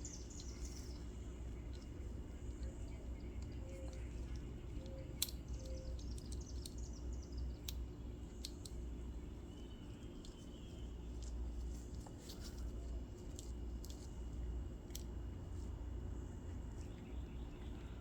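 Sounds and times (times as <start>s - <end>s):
faint bird chirps: 0.0s - 11.4s, 16.7s - 18.0s
low steady rumble: 0.0s - 18.0s.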